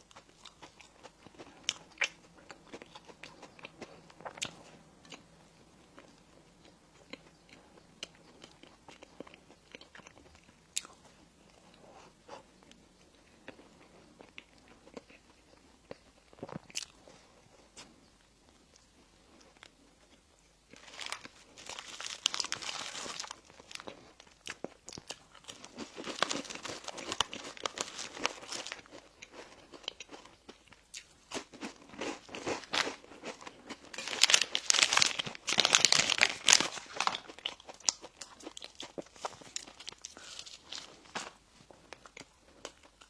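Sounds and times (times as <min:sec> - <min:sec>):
crunchy bites and chewing: 0:19.5 - 0:43.0
plastic wrapping crinkling: 0:20.8 - 0:24.0, 0:25.4 - 0:28.9, 0:33.9 - 0:41.8.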